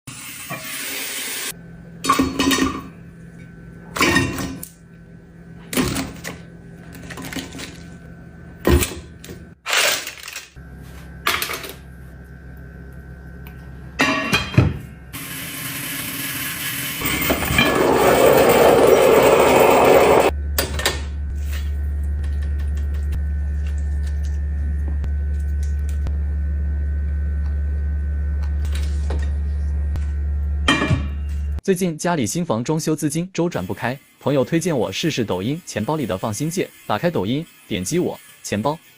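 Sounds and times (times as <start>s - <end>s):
steady low hum: 10.2s - 15.2s, 17.0s - 31.6s.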